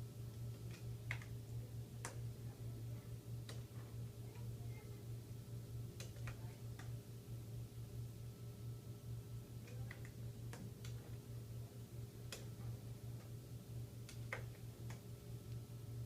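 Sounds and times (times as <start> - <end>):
ultrasound machine pulsing hum: 0.0 - 16.0.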